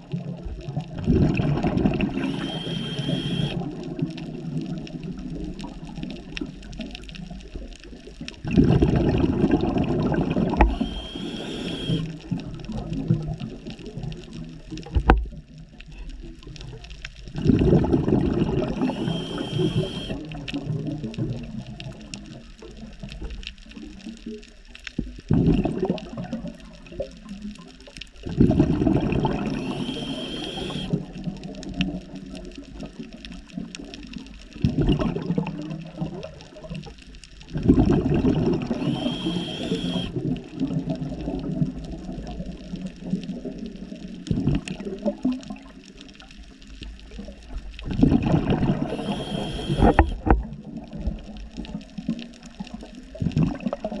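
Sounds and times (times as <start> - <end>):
exhaled bubbles gushing: 0.0 - 23.1, 25.2 - 46.0, 47.0 - 54.0
hissing inhale through regulator: 2.0 - 3.6, 10.6 - 12.1, 18.6 - 20.2, 29.4 - 31.0, 38.7 - 40.2, 48.8 - 50.2
low steady hiss: 9.3 - 17.5.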